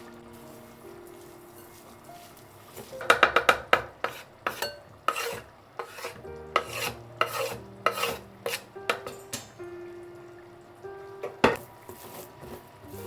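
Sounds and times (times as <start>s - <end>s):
utensil scraping cooking vessel: 2.6s - 9.4s.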